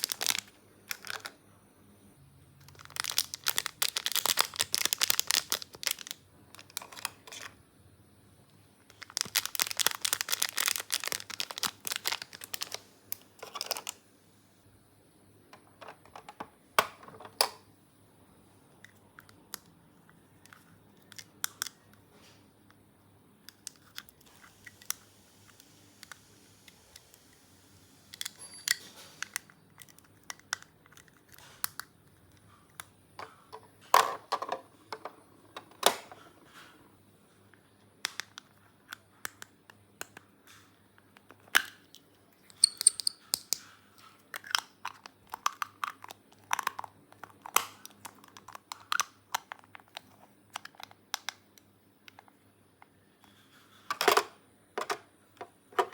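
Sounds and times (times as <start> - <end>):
packaging crinkling: 0.0 - 1.4, 2.6 - 7.5, 8.9 - 14.0
plastic toy pieces clicking: 42.5 - 43.6, 44.4 - 49.6.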